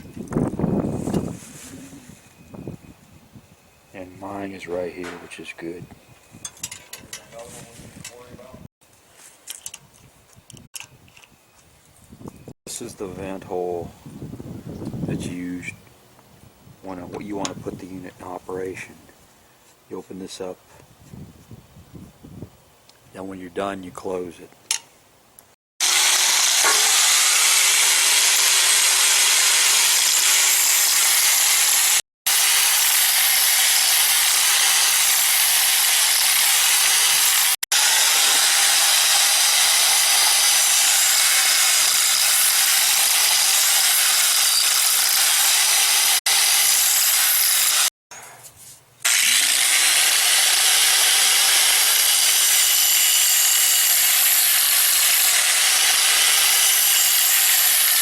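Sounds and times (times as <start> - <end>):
grinder hissing on metal: 25.8 - 47.9, 49.0 - 58.0
grinder motor whine: 25.8 - 47.9.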